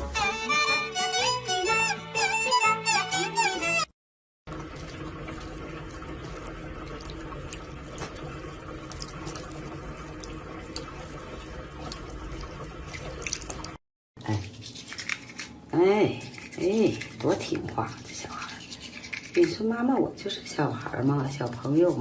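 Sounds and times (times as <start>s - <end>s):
running water: 4.5s - 22.0s.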